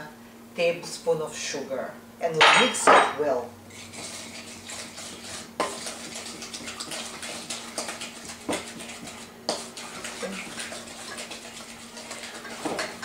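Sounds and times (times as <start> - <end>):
whisking eggs in a bowl: 3.7 - 13.0.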